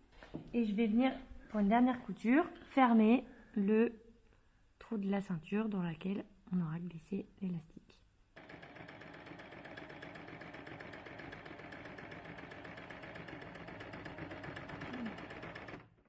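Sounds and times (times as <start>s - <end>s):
sewing machine running: 8.4s - 16.0s.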